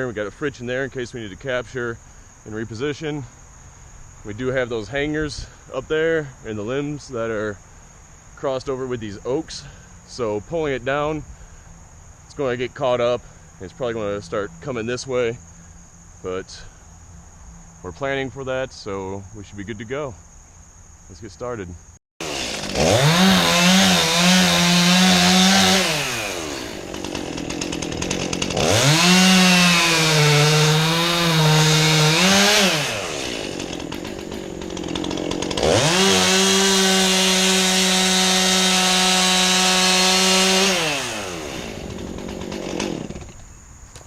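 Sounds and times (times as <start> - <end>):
chainsaw revving: 22.2 - 43.5
chainsaw cutting wood: 22.2 - 44.0.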